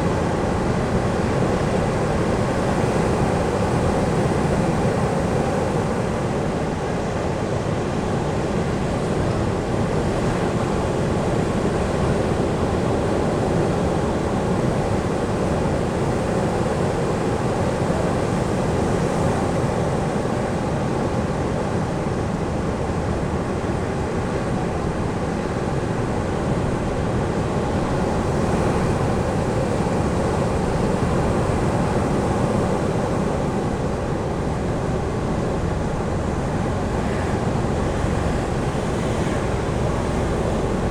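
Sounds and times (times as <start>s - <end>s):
ocean waves roaring: 23.2s - 40.9s.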